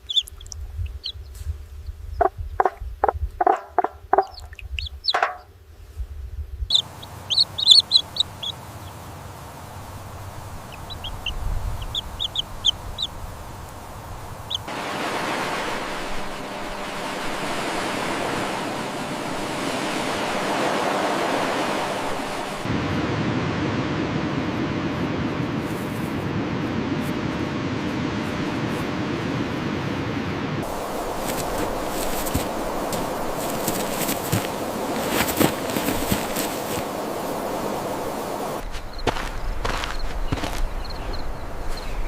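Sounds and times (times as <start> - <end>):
chicks chirping: 0.0 - 1.4, 2.1 - 5.4, 6.7 - 14.7, 30.6 - 42.0
chickens clucking: 2.2 - 5.4, 6.7 - 9.2, 10.4 - 13.3
steady rushing noise: 6.8 - 42.0.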